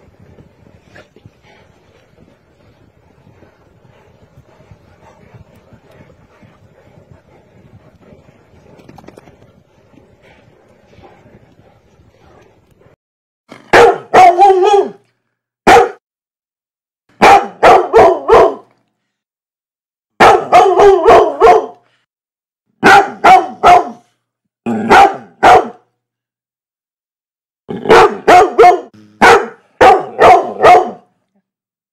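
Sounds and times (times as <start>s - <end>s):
dog barking: 13.7s - 15.0s, 15.6s - 16.0s, 17.2s - 18.7s, 20.2s - 21.8s, 22.8s - 24.1s, 24.8s - 25.9s, 27.8s - 31.1s.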